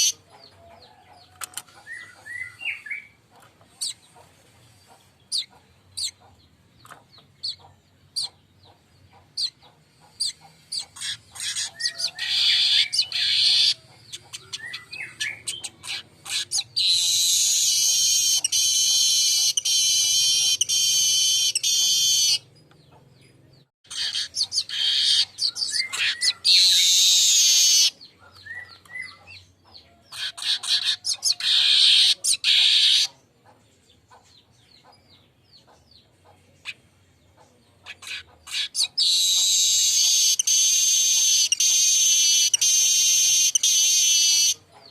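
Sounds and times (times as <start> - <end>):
weaver bird chattering song: 0.0 - 44.9.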